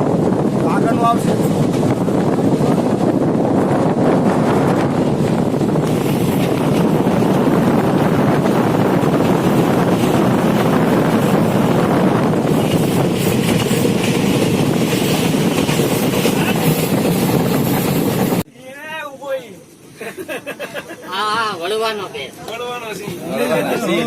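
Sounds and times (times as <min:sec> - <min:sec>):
wind noise on microphone: 0:00.0 - 0:18.4
train rumbling on rails: 0:00.0 - 0:18.5.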